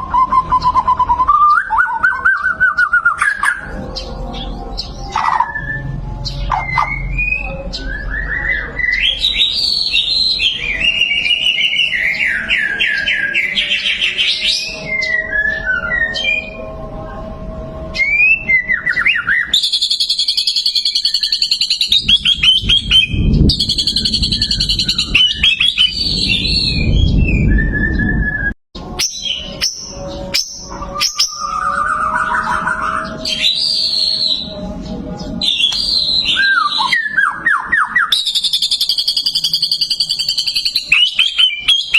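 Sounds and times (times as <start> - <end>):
bird singing whistled phrases: 0.0 - 17.2, 17.9 - 34.6, 35.4 - 41.9
low rumble: 21.9 - 28.6.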